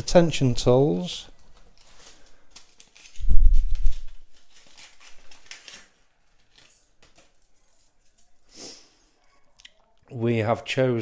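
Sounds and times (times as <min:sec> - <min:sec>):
metal tools clicking and rustling: 0:05.3 - 0:09.2.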